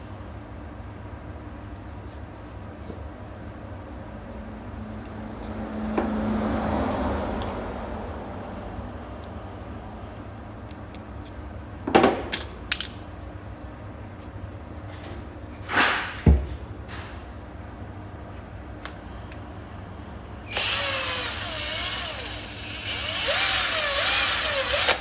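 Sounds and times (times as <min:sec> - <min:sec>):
small power tool whirring: 0:20.5 - 0:25.0.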